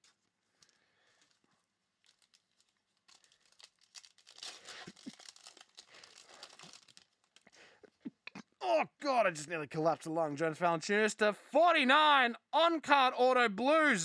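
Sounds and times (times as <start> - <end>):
foil wrapper crinkling: 0.0 - 7.8.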